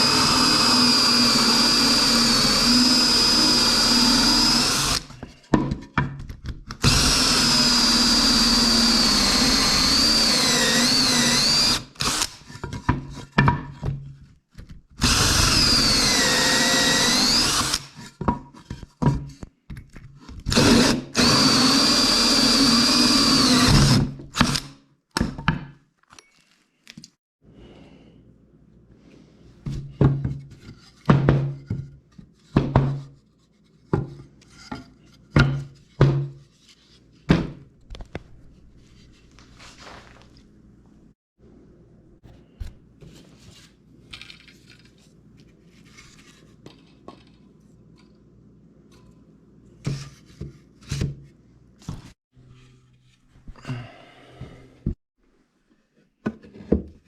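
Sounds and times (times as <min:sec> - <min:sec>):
power drill whining: 0:00.0 - 0:05.1, 0:06.8 - 0:12.4, 0:15.0 - 0:17.9, 0:20.5 - 0:24.7.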